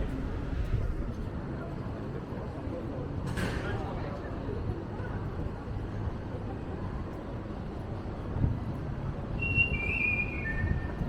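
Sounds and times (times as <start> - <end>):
wind buffeting microphone: 0.0 - 2.2, 4.5 - 11.0.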